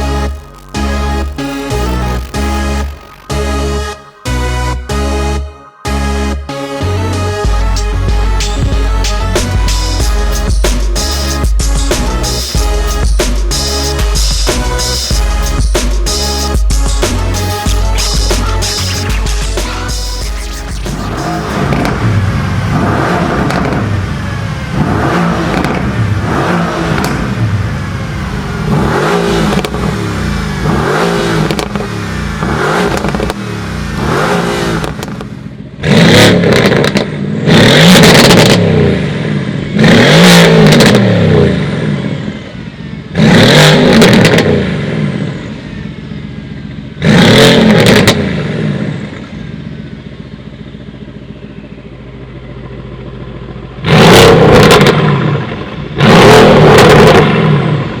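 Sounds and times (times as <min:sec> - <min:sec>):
car engine revving: 0:00.0 - 0:58.0
car engine idling: 0:48.4 - 0:54.0.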